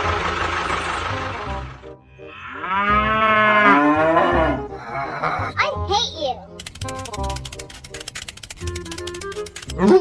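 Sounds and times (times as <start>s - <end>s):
steady engine-like noise: 0.0s - 2.0s
cow mooing: 2.1s - 5.2s.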